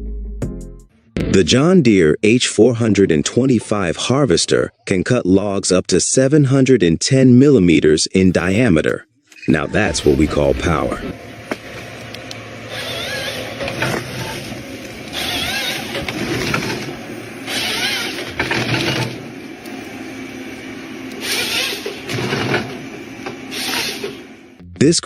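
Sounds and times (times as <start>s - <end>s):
forestry harvester running: 9.5s - 24.6s
chainsaw cutting logs: 12.7s - 19.3s, 21.1s - 22.9s, 23.5s - 24.2s.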